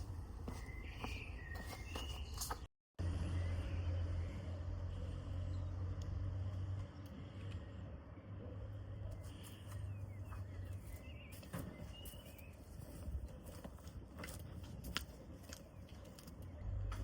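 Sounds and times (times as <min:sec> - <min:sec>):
footsteps: 0:00.0 - 0:02.7.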